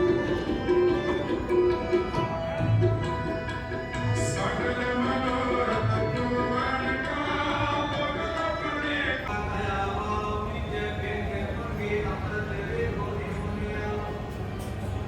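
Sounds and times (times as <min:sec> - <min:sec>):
devotional singing: 0:04.4 - 0:14.4.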